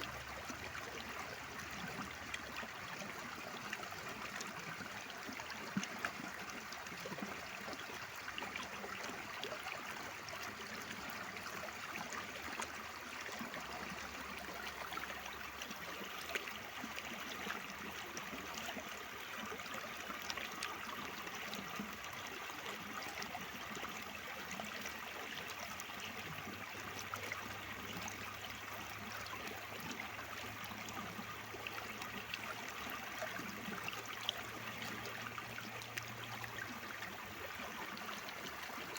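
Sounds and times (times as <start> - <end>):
stream water flowing: 0.0 - 38.9.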